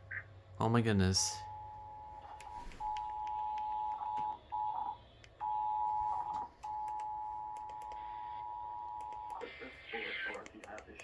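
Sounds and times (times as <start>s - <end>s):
two-tone alert alarm: 1.4s - 9.4s.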